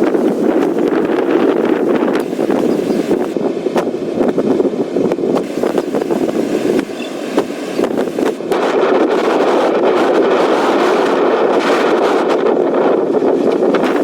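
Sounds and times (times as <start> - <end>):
strong wind gusts on microphone: 0.0 - 14.0.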